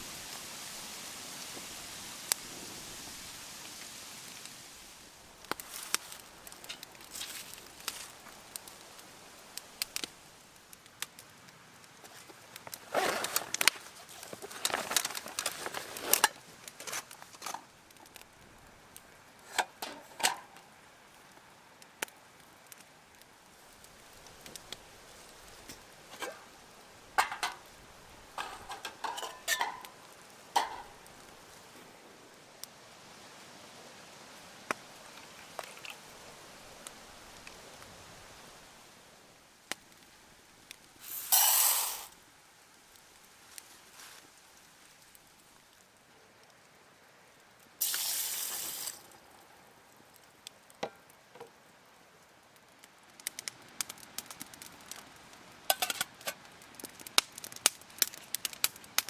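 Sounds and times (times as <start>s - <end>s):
utensils knocking against pots: 28.4s - 29.8s.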